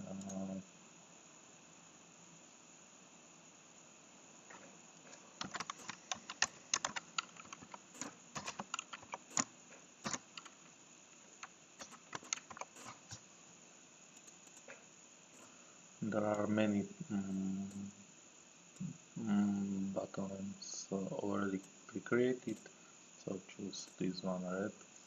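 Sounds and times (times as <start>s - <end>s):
faint steady hiss: 0.0s - 25.0s
computer keyboard typing: 5.4s - 9.5s, 10.1s - 10.6s, 11.4s - 13.2s.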